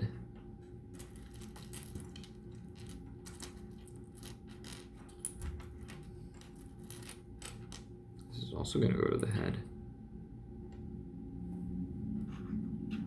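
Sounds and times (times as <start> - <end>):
plastic pieces clicking and rattling: 1.0 - 7.8.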